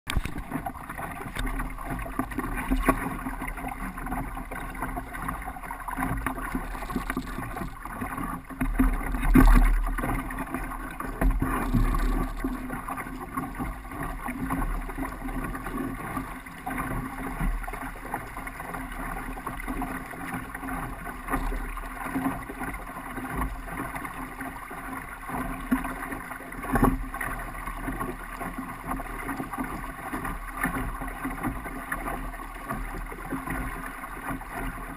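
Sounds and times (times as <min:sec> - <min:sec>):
water rushing along hull: 0:00.1 - 0:34.9.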